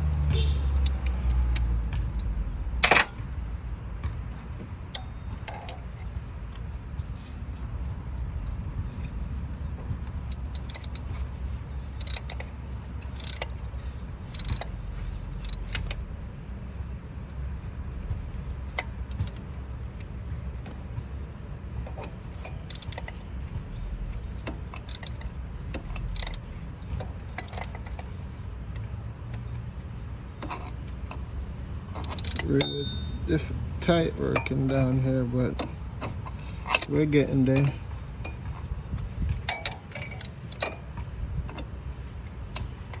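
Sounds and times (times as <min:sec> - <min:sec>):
low background rumble: 0:01.6 - 0:39.6
metal tools clinking: 0:04.9 - 0:05.8, 0:10.3 - 0:11.2, 0:11.9 - 0:16.0, 0:22.4 - 0:23.2, 0:24.9 - 0:25.2, 0:26.2 - 0:26.4, 0:32.0 - 0:33.2, 0:36.7 - 0:37.0, 0:40.0 - 0:40.8.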